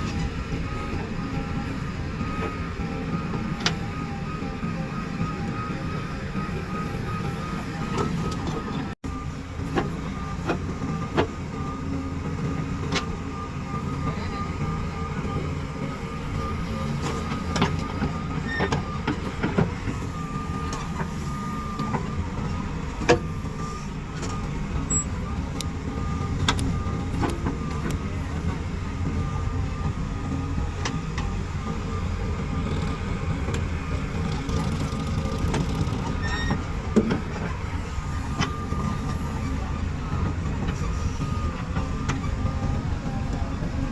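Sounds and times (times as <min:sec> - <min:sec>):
diesel engines rumbling: 0:00.0 - 0:43.9.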